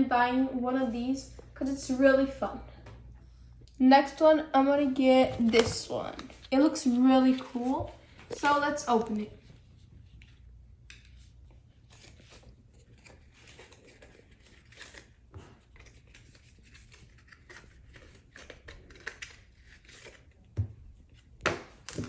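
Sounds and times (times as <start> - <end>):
packaging opened by hand: 11.9 - 20.4.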